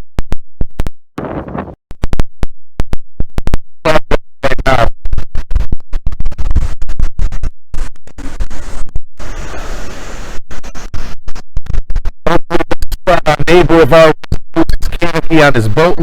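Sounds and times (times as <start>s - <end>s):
wind gusts buffeting microphone: 1.2s - 1.8s.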